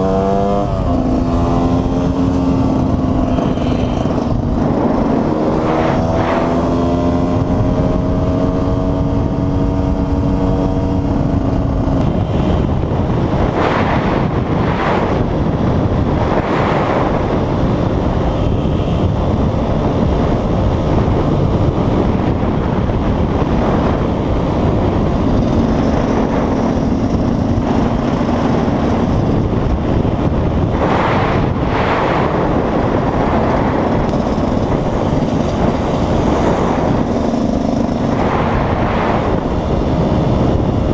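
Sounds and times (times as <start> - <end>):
wind rush on microphone: 0.0 - 40.9
two-stroke engine running: 0.8 - 8.3, 21.2 - 30.7, 33.2 - 40.9.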